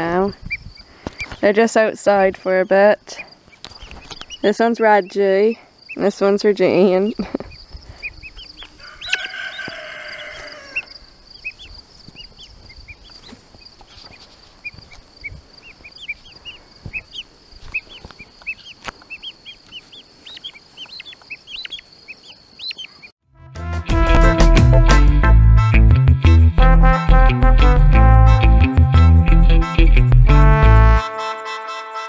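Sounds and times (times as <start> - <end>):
guinea fowl chirping: 0.4 - 1.4, 2.7 - 6.1, 7.2 - 23.1
music: 23.2 - 32.0.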